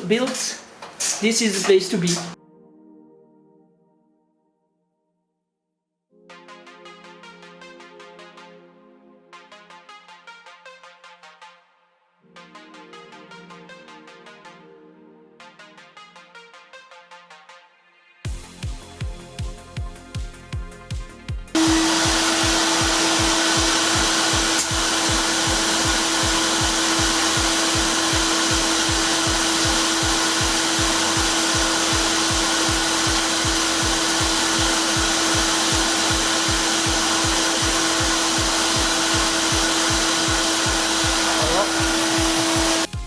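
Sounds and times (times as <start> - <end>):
synthwave music with kick drum: 6.1 - 43.0
motor-driven machine whining: 21.6 - 42.9.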